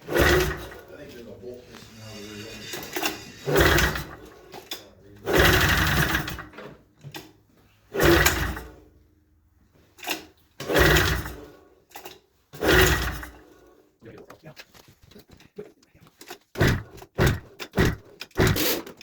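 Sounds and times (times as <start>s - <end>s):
engine turning over without firing: 0.0s - 0.9s, 1.8s - 6.7s, 7.9s - 8.8s, 10.2s - 11.5s, 12.6s - 13.4s, 16.6s - 19.0s
recoil starter pulls: 0.0s - 8.9s, 9.9s - 13.7s, 14.6s - 19.0s.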